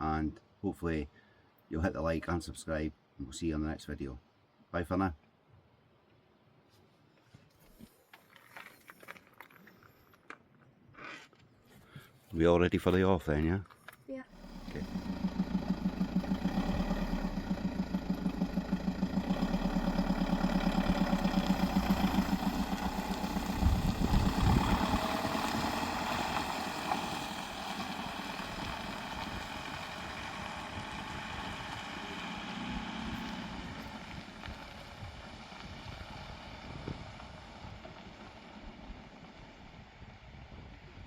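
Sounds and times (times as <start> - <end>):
engine knocks: 14.3 - 31.8
engine turning over: 14.3 - 39.3.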